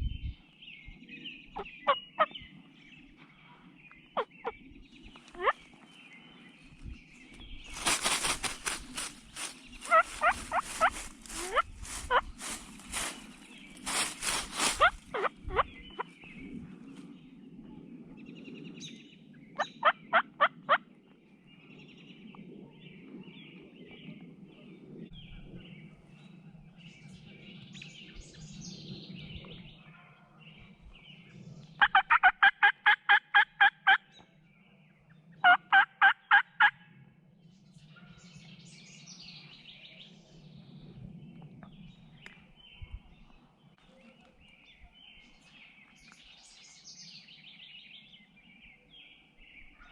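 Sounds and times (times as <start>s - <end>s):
songbirds chirping: 0.0s - 49.9s
turkey yelping: 9.8s - 12.3s, 14.6s - 15.7s, 31.8s - 34.0s, 35.4s - 36.8s.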